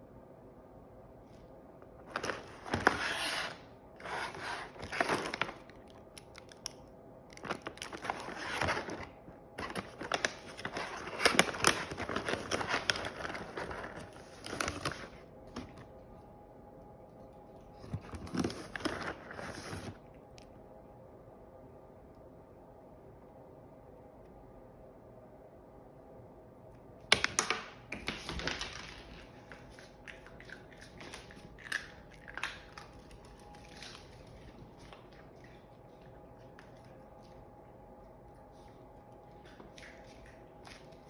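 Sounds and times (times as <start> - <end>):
plastic packaging crinkling and tearing: 2.0 - 15.8, 17.9 - 20.0.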